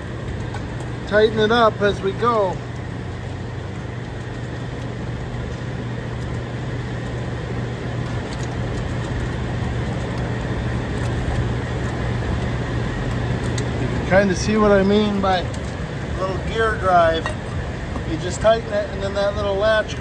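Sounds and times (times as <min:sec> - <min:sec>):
machinery humming: 0:00.0 - 0:20.0.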